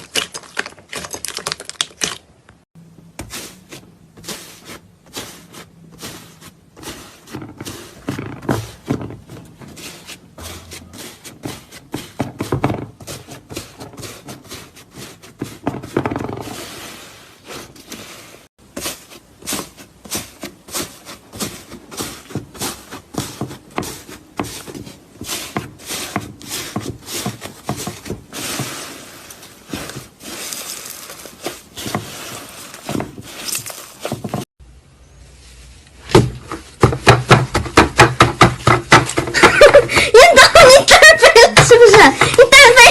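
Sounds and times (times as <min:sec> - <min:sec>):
slime crackling and popping: 0:00.0 - 0:02.6.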